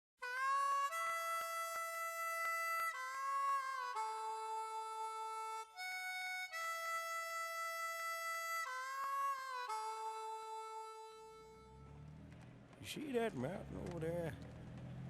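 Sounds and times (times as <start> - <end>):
harmonica playing chords: 0.2 - 12.0.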